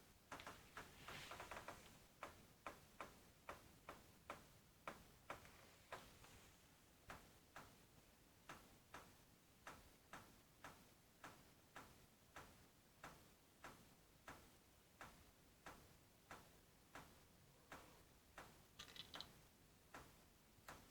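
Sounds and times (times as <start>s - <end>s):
sharp high clicks: 18.8s - 19.4s.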